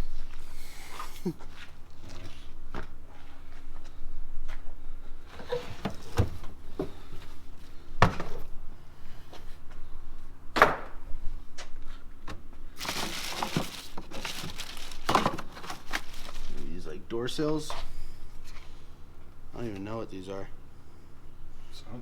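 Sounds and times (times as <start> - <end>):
rustling: 12.8 - 16.7.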